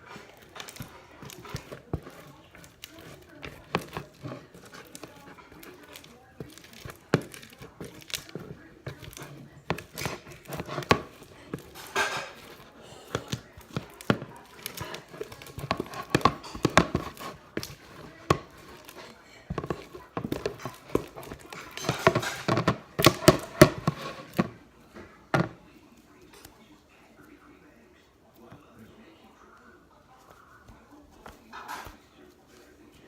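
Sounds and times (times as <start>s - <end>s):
slime squelching: 0.0s - 25.6s.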